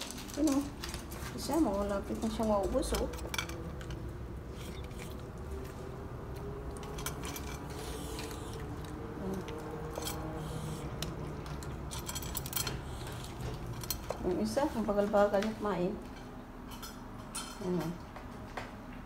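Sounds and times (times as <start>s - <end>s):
dogs crunching kibble: 0.0s - 14.4s
low steady hum: 0.0s - 18.3s.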